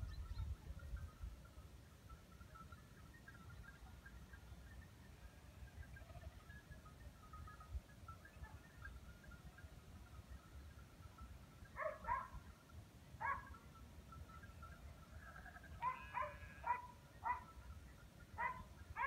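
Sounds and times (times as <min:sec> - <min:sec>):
dog barking: 0:11.8 - 0:12.4, 0:13.2 - 0:13.5, 0:15.8 - 0:17.5, 0:18.4 - 0:19.0.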